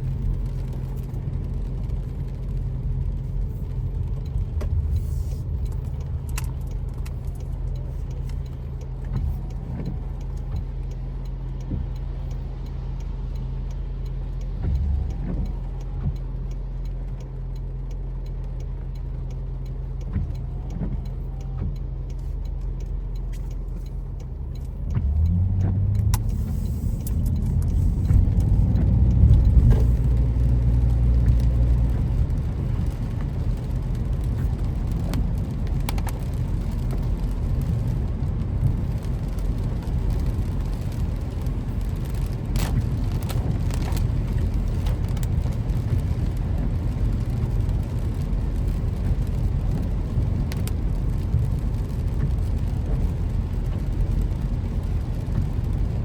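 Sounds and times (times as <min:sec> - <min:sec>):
car engine and road rumble: 0:00.0 - 0:56.0
sharp clicks: 0:03.6 - 0:37.8.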